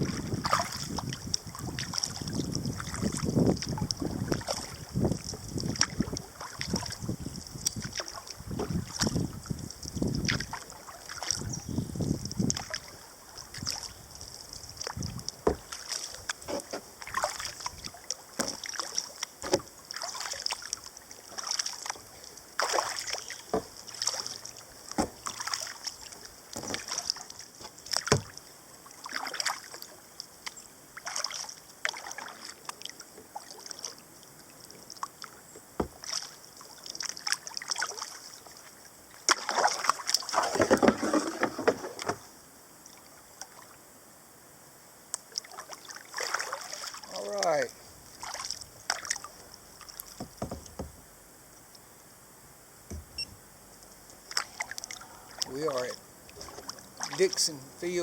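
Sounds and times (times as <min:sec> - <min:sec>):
kayak paddle splashing in water: 0:00.0 - 0:11.6, 0:12.4 - 0:29.9, 0:31.0 - 0:34.0, 0:35.2 - 0:38.6, 0:39.2 - 0:42.4, 0:45.3 - 0:51.0, 0:56.3 - 0:57.5
water dripping off paddle: 0:12.2 - 0:28.4.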